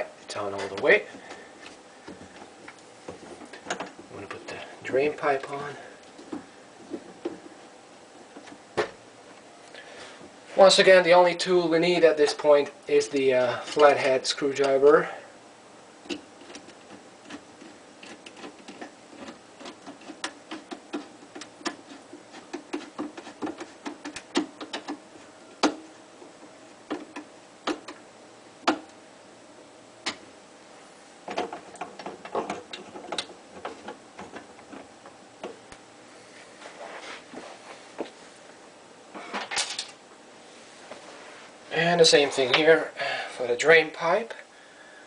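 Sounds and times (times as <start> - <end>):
metal and plastic scraping: 16.1 - 25.0, 31.2 - 35.6
clicks and taps of parts: 18.0 - 25.0, 25.6 - 25.9, 26.9 - 28.0.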